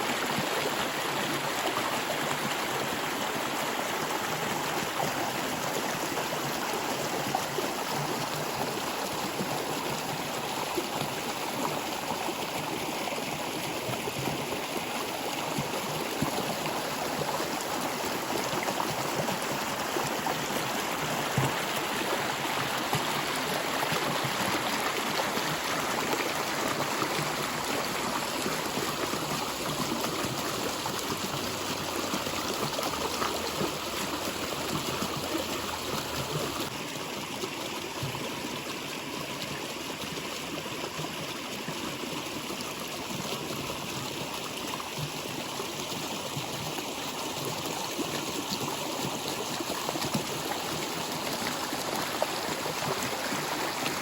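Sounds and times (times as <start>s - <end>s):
stream water flowing: 0.0s - 54.0s.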